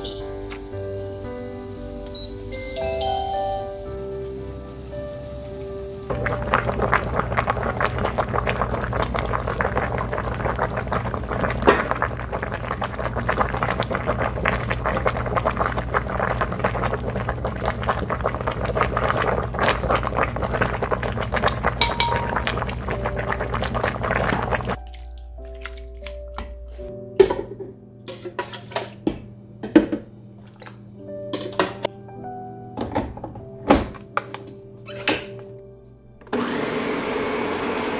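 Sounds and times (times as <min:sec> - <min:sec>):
soft background music: 0:00.0 - 0:36.4
water splashing and pouring: 0:06.1 - 0:29.1, 0:30.3 - 0:31.9.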